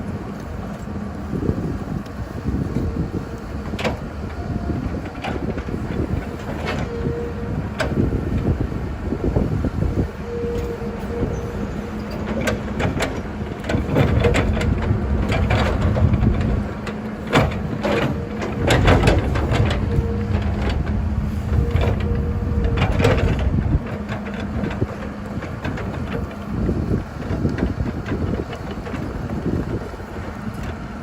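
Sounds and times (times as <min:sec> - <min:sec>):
excavator diesel engine droning: 0:00.0 - 0:31.0
knocks and clatters: 0:12.1 - 0:21.0.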